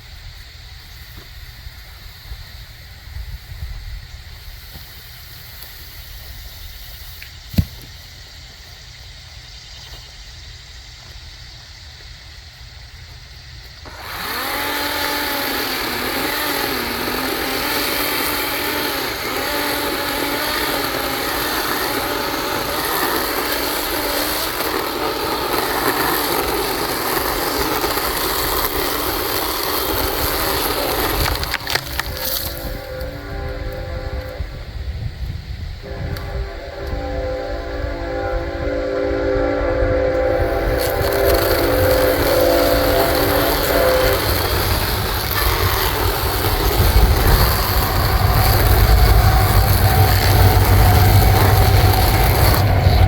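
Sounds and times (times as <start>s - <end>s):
battery chainsaw motor whine: 1.1s - 8.6s, 13.1s - 38.4s, 40.0s - 53.0s
low rumble: 44.6s - 53.0s.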